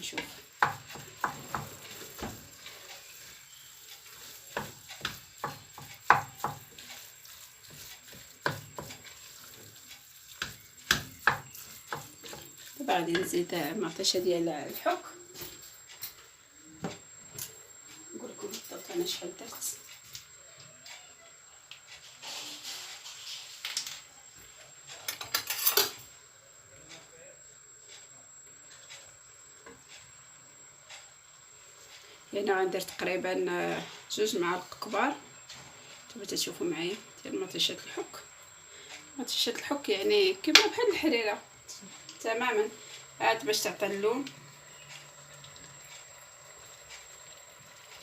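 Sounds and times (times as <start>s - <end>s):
meat sizzling in a pan: 0.0s - 15.9s, 17.1s - 24.1s, 29.0s - 48.0s
spoon knocking against pan: 0.2s - 2.6s, 3.5s - 6.9s, 7.8s - 9.1s, 10.4s - 13.4s
metal spoon scraping and clinking: 25.1s - 26.0s.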